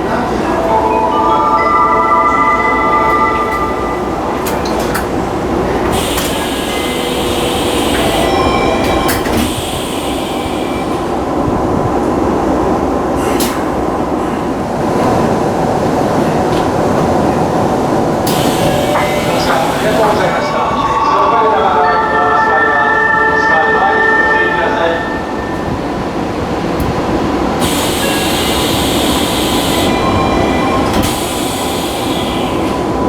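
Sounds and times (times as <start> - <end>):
train car running rumble: 0.0 - 22.4, 24.6 - 33.0
train door chime: 0.4 - 11.2, 18.2 - 33.0.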